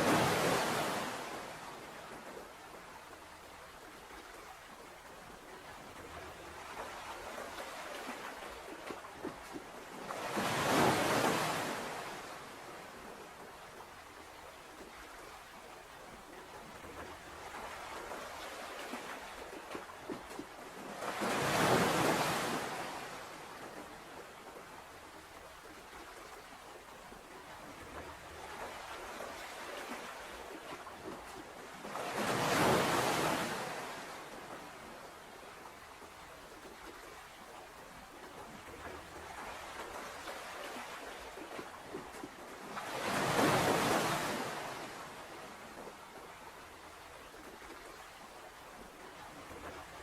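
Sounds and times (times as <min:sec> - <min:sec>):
wave washing in: 0:00.0 - 0:01.9
steady wash of water: 0:00.0 - 0:50.0.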